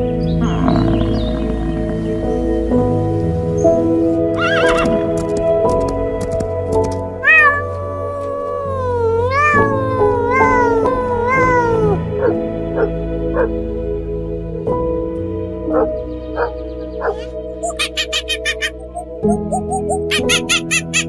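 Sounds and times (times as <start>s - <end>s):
background music: 0.0s - 21.0s
animal crying: 4.4s - 4.9s, 7.2s - 13.5s, 15.8s - 21.0s.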